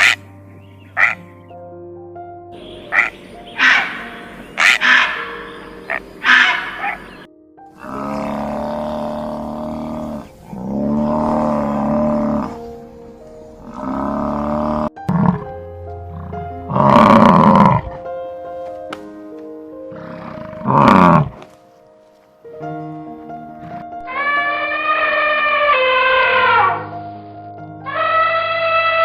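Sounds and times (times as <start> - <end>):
drawn-out pitched sounds: 0.0 - 1.6, 2.6 - 17.9
background music: 0.0 - 29.0
large animal roaring: 7.8 - 12.8, 13.6 - 18.1, 19.9 - 21.4.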